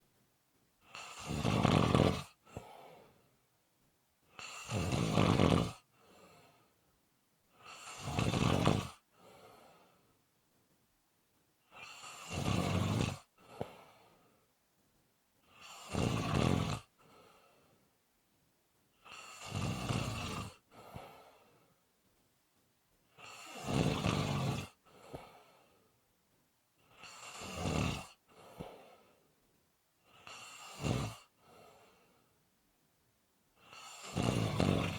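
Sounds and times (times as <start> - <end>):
loud rhythmic snoring: 0.8 - 3.3, 4.3 - 6.7, 7.5 - 10.1, 11.6 - 14.3, 15.4 - 17.8, 19.0 - 21.7, 23.1 - 25.9, 26.8 - 29.2, 30.0 - 32.3, 33.6 - 34.9
faint breath out: 2.4 - 3.4, 5.9 - 6.8, 9.1 - 10.2, 13.4 - 14.5, 17.0 - 17.9, 20.7 - 21.8, 24.8 - 26.0, 28.3 - 29.4, 31.4 - 32.4.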